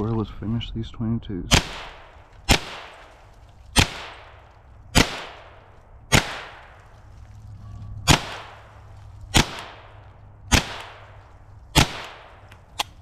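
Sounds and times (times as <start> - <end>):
gunshots with echo: 1.5 - 3.1, 3.8 - 6.8, 8.0 - 11.2, 11.8 - 12.5.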